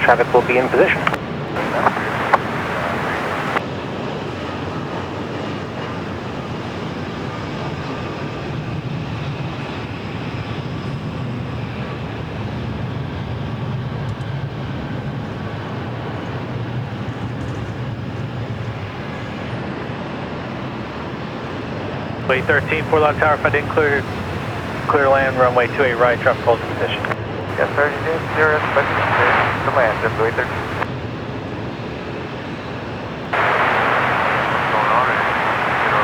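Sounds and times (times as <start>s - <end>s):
jet engines roaring: 0.0s - 3.6s, 22.3s - 30.9s, 33.4s - 36.0s.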